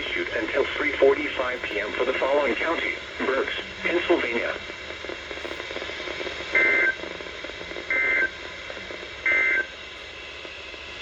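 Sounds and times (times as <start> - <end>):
faint broadcast hiss: 0.0 - 6.8.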